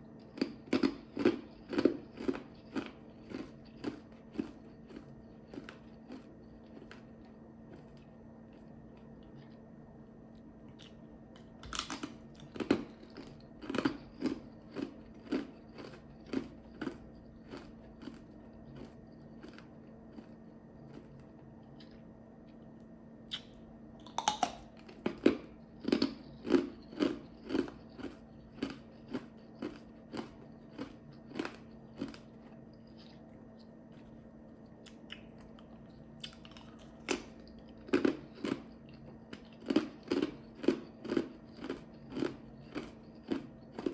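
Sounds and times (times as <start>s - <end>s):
ice chips crunching: 0.4s - 7.1s, 10.8s - 18.2s, 24.0s - 32.3s, 39.4s - 43.9s.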